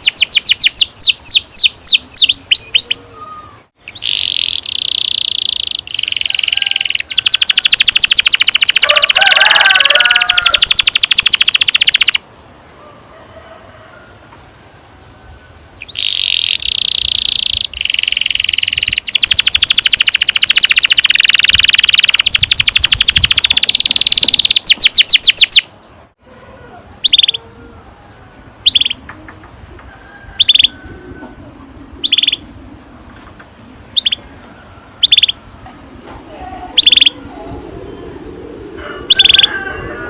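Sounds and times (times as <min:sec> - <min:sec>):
canary chirps: 0:00.0 - 0:12.2, 0:15.8 - 0:26.0, 0:26.9 - 0:27.6, 0:28.6 - 0:29.0, 0:30.4 - 0:32.5, 0:33.9 - 0:34.3, 0:35.0 - 0:35.5, 0:36.7 - 0:37.2, 0:39.0 - 0:39.6
canary trilling: 0:00.0 - 0:12.2, 0:15.8 - 0:25.8, 0:27.0 - 0:27.6, 0:28.6 - 0:29.0, 0:30.4 - 0:30.7, 0:32.0 - 0:32.4, 0:33.9 - 0:34.3, 0:35.0 - 0:35.5, 0:36.5 - 0:37.4, 0:39.0 - 0:39.6.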